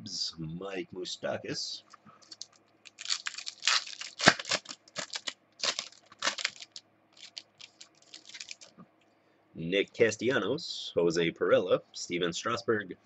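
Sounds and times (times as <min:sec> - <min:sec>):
trading cards being flipped: 0:02.2 - 0:08.7.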